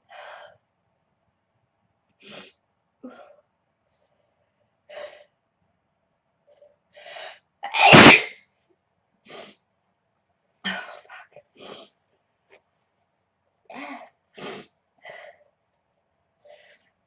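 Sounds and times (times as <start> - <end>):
faint breathy sounds: 0.0 - 0.6, 2.2 - 5.4, 16.4 - 17.0
woman sneezing: 7.7 - 8.3.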